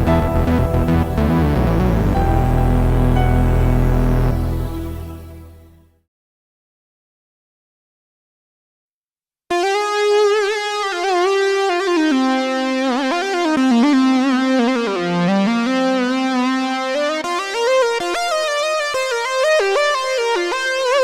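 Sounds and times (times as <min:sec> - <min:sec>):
synthesizer melody with sliding notes: 0:00.0 - 0:06.0.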